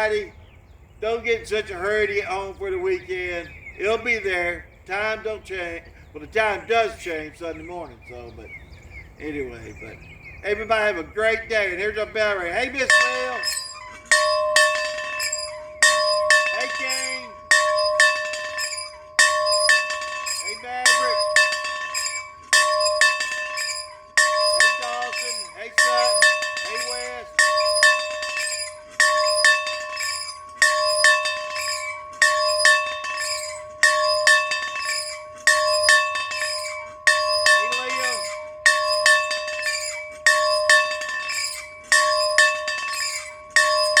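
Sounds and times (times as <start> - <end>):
bell ringing: 12.6 - 44.0.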